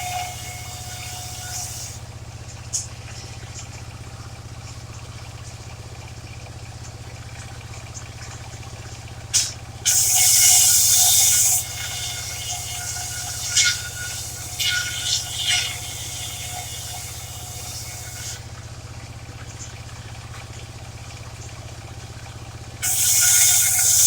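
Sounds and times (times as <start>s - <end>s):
sawmill engine humming: 0.0s - 24.0s
loud hissing burst: 9.4s - 18.4s, 22.8s - 24.0s.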